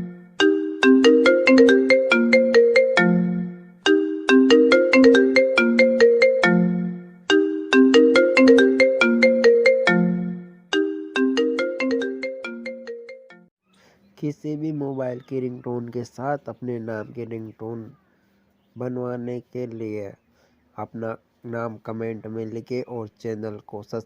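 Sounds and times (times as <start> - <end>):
mobile phone ringtone melody: 0.0 - 13.5.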